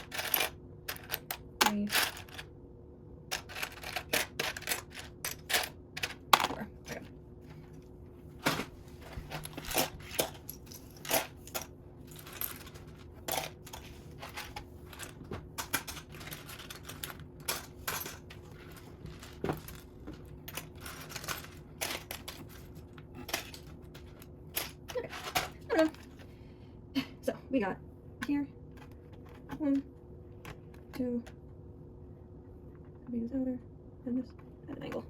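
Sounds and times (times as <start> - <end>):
plastic pieces clicking and clattering: 0.0 - 2.5, 3.3 - 7.0, 9.3 - 26.2
faint steady hum: 0.0 - 35.0.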